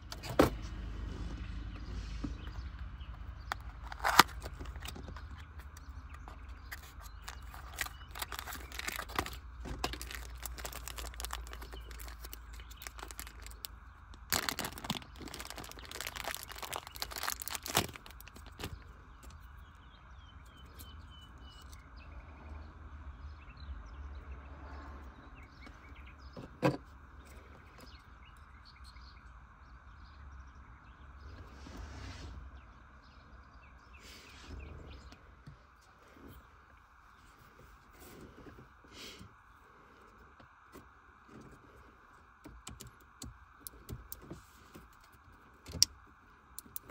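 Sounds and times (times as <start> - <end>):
steady low hum: 0.0 - 46.9
plastic parts clicking and rustling: 3.1 - 19.4, 46.6 - 46.9.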